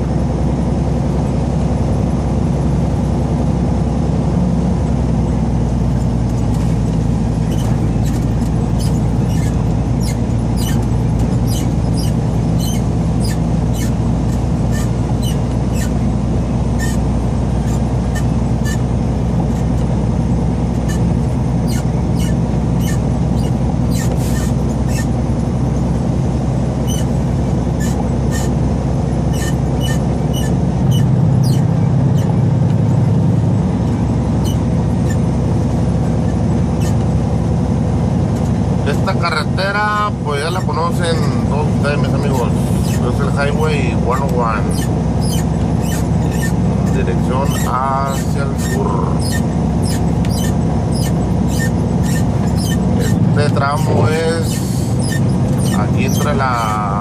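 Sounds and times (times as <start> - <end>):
diesel truck engine running: 0.0 - 57.0
short high squeaks and ticks: 6.0 - 16.0, 16.8 - 17.0, 17.6 - 18.9, 20.8 - 25.2, 26.8 - 27.2, 27.8 - 28.6, 29.3 - 32.4, 33.9 - 35.3, 36.2 - 37.1, 42.3 - 43.4, 44.1 - 56.9.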